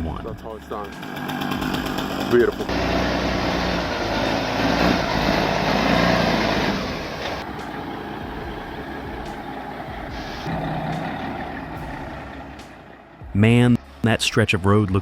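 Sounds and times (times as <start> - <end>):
diesel truck engine running: 0.0 - 13.8
chainsaw running: 0.5 - 12.7.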